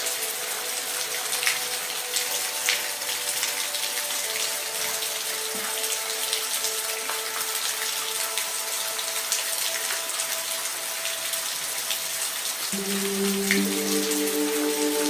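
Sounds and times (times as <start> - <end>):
rain hiss: 0.0 - 15.0
low chord of held tones: 12.8 - 15.0.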